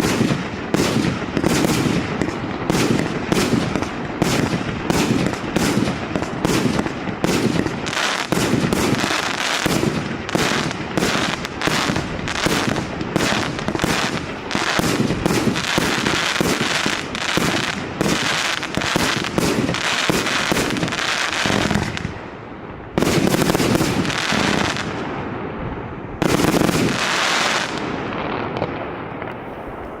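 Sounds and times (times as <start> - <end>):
firework volley of launches and bursts: 0.0 - 30.0.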